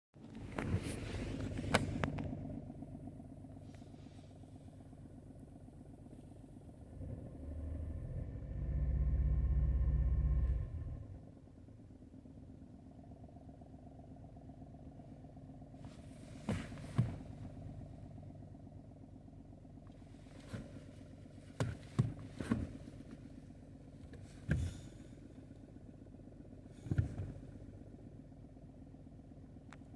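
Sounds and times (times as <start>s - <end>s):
car engine idling: 0.2s - 29.9s
short sharp engine knocks: 15.8s - 17.7s, 24.1s - 25.1s, 26.8s - 27.6s.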